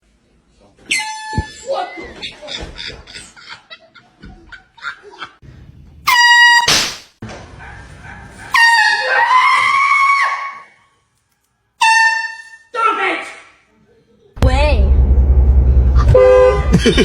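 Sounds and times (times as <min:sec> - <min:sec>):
air horn blasts: 0:11.8 - 0:12.6, 0:16.0 - 0:16.8.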